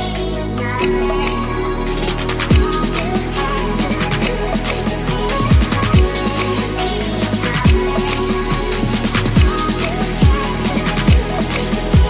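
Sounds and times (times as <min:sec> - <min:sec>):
electronic music with steady beat: 0:00.0 - 0:12.0
deep falling kick drums: 0:05.5 - 0:06.2.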